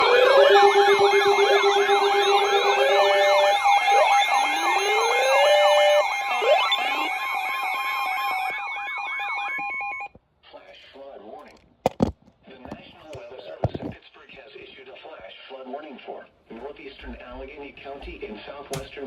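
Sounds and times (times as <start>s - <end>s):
electronic sirens yelping: 0.0s - 10.1s
sirens wailing: 0.0s - 10.1s
steady alarm tones: 0.0s - 10.2s.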